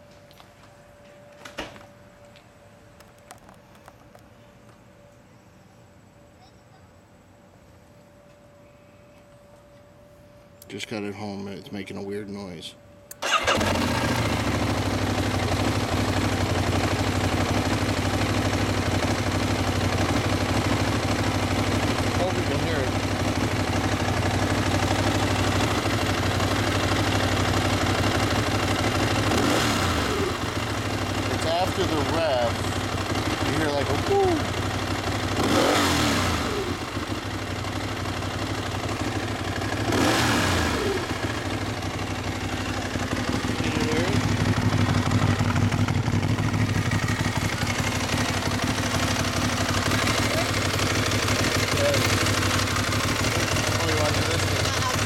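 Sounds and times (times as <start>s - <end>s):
motorcycle engine idling: 13.2s - 55.0s
gliding whine after revs: 39.1s - 55.0s.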